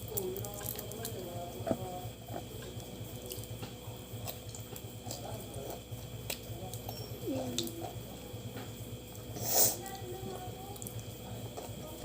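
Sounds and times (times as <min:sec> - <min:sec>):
steady low hum: 0:00.0 - 0:12.0
chewing and biting crab: 0:00.3 - 0:08.1.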